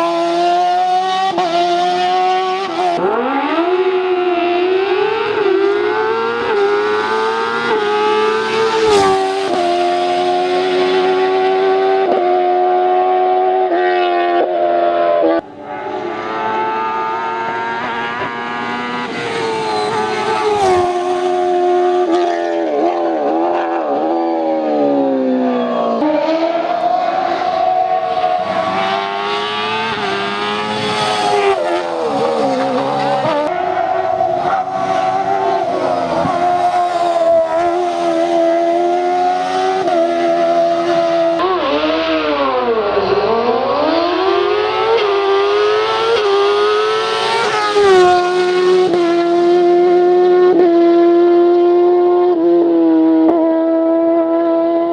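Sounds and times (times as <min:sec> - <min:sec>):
rally car engines revving: 0:00.0 - 0:54.9.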